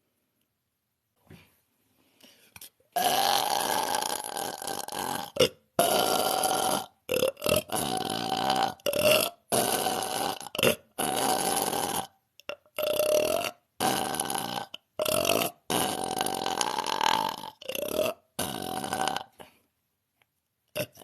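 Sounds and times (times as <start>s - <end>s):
woman burping: 3.0s - 19.6s.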